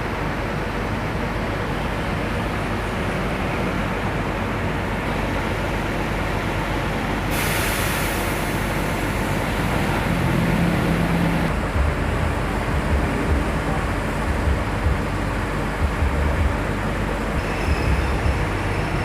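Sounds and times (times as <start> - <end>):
bus engine rumble: 0.0 - 19.0
air hissing: 7.2 - 11.8
low thumps: 11.5 - 18.7.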